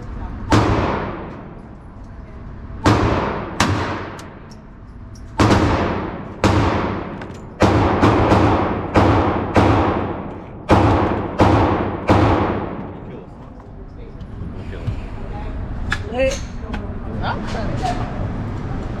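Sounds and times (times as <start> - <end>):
gunshots with ringing decay: 0.5 - 1.6, 2.8 - 4.2, 5.4 - 12.9.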